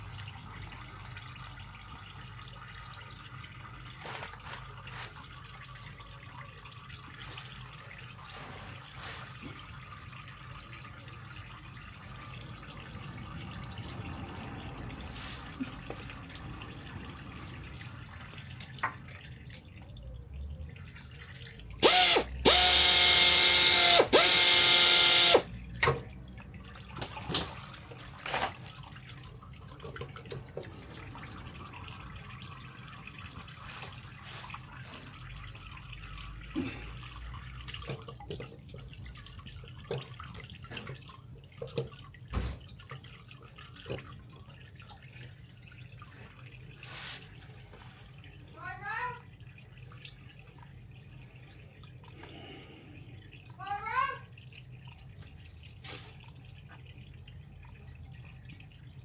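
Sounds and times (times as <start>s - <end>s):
pneumatic wrench whirring: 21.8s - 25.5s.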